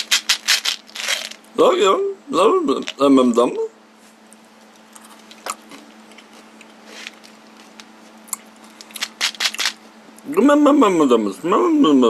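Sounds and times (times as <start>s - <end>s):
steady low hum: 0.0s - 12.0s
soft rustle: 3.9s - 4.5s.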